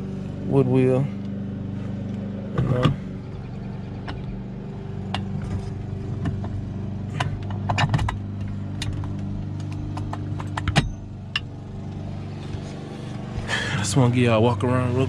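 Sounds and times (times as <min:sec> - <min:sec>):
car engine running: 0:00.0 - 0:15.0
metallic clicks and rattles: 0:05.1 - 0:12.0.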